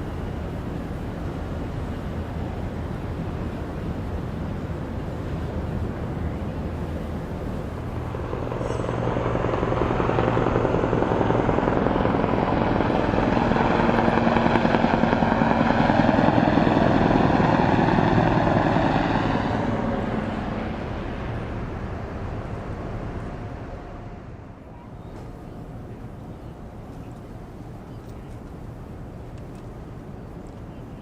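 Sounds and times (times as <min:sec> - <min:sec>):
helicopter flying past: 0:05.9 - 0:24.6.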